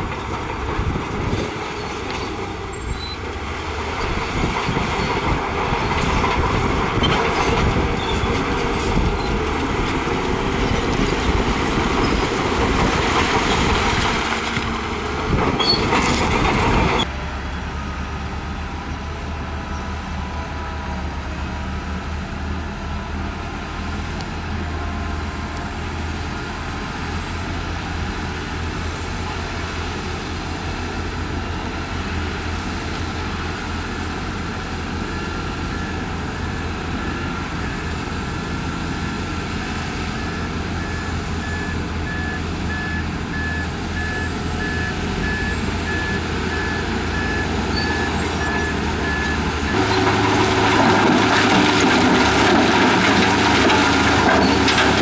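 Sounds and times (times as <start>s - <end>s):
diesel engine running: 0.0s - 55.0s
rock and steel grinding: 47.7s - 55.0s.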